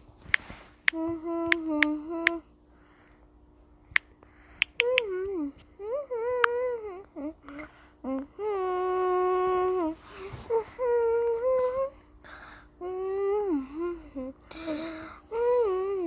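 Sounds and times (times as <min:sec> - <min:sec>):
person singing wordless melody: 0:00.9 - 0:02.6, 0:04.6 - 0:12.0, 0:12.8 - 0:16.0
singer breathing: 0:02.7 - 0:03.3, 0:04.2 - 0:04.8, 0:12.2 - 0:12.8, 0:14.4 - 0:15.3.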